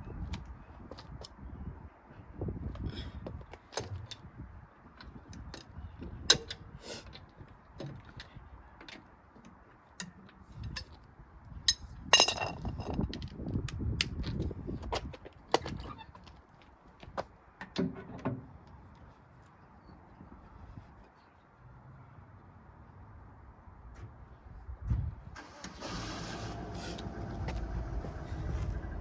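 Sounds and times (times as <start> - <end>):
wind buffeting microphone: 0.0 - 8.7, 10.5 - 16.0, 24.3 - 29.0.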